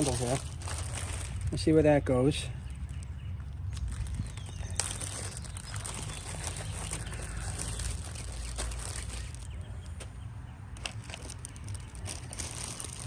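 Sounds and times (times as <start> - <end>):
plastic parts clicking and rustling: 10.8 - 13.0.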